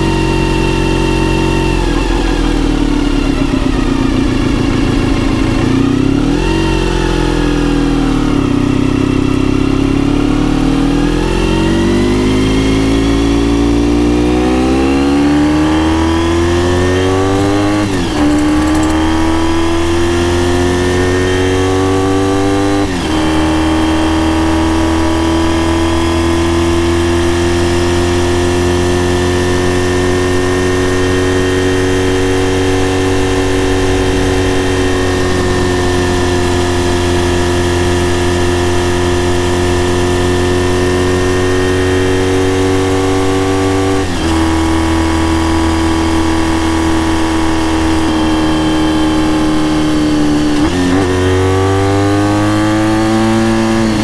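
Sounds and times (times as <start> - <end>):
motorcycle engine while riding: 0.0 - 54.0.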